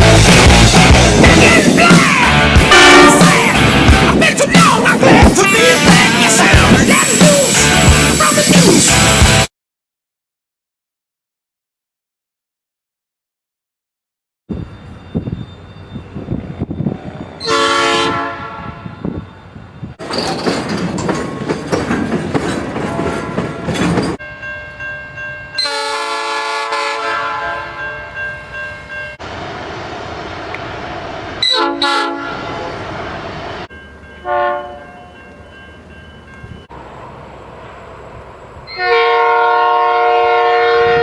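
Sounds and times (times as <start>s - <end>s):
train passing: 0.0s - 9.5s, 14.5s - 41.0s
train horn: 2.6s - 3.6s, 17.4s - 19.1s, 25.6s - 27.9s, 31.4s - 32.8s, 34.2s - 34.9s, 38.7s - 41.0s.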